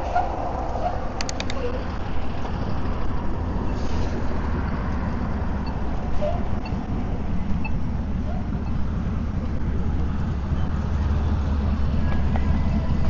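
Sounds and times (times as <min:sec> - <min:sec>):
tyres rolling on pavement: 0:00.0 - 0:13.0.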